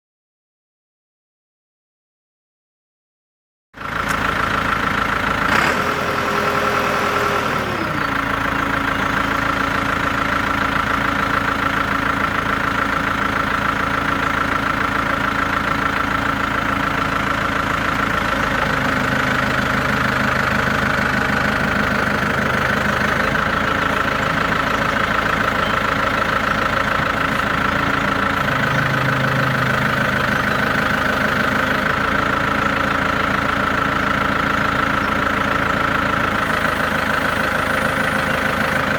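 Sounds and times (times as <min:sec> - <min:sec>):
diesel engine idling: 0:03.8 - 0:38.9
steady high whine: 0:23.1 - 0:32.3.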